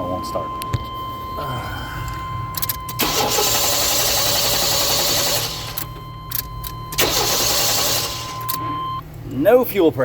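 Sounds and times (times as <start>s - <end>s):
car engine cranking: 2.0s - 8.8s.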